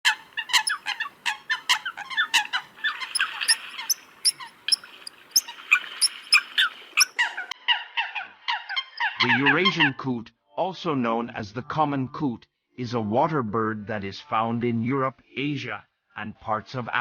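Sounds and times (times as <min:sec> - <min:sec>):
coots calling: 0:00.0 - 0:07.6.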